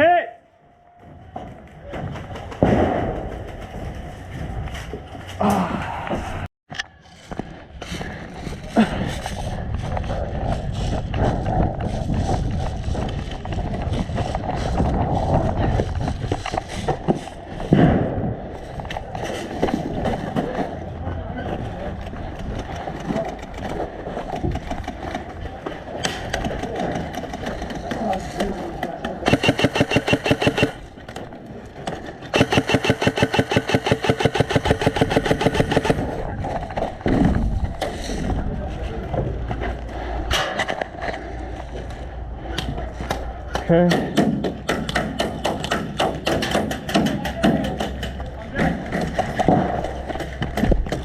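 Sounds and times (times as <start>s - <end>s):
wind on microphone: 8.3s - 20.0s
airsoft rifle firing full auto: 29.2s - 30.9s, 32.3s - 36.1s.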